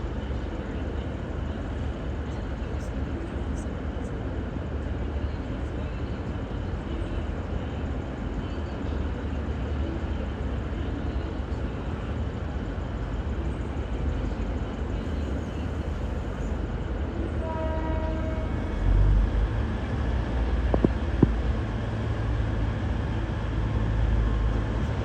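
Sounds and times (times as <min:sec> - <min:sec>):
diesel railcar rumbling: 0:00.0 - 0:25.0
faint two-tone horn: 0:17.4 - 0:19.0.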